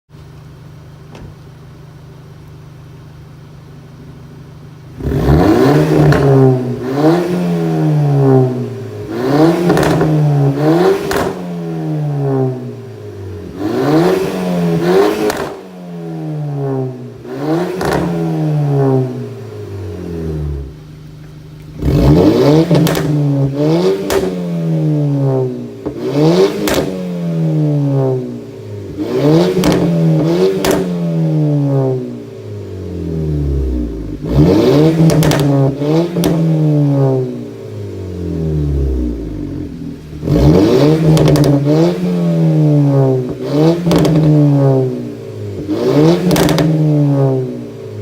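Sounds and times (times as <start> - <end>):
car engine idling and revving: 0.1 - 48.0
exhaust crackles and pops: 4.8 - 7.3, 8.0 - 11.4, 13.6 - 15.6, 17.3 - 27.1, 27.7 - 32.1, 33.5 - 37.6, 38.7 - 48.0.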